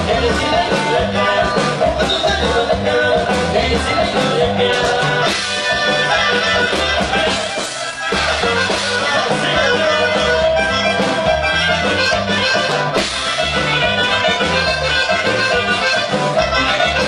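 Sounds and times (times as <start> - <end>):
accordion held notes: 0.0 - 17.0
bass: 0.0 - 17.0
steady drum beat: 0.0 - 17.0.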